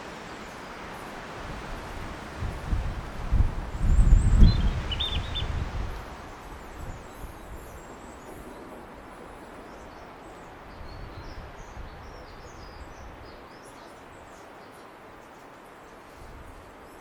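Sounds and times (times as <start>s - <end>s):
robin singing: 3.8s - 5.7s.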